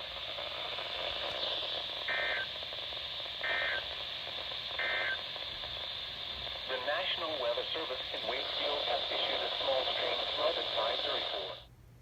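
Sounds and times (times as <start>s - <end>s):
radio static: 0.0s - 11.7s
warbling data tone bursts: 0.9s - 4.1s, 4.8s - 5.3s.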